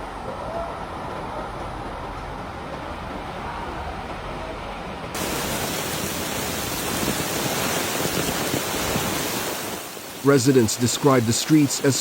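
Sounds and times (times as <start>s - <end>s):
heavy rain: 5.2s - 12.0s.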